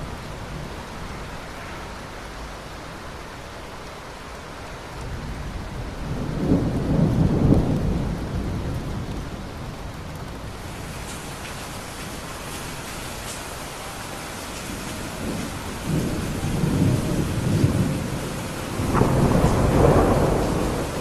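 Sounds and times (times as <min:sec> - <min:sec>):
steady rain: 0:00.0 - 0:21.0
thunder rolling: 0:05.1 - 0:09.3, 0:14.5 - 0:21.0.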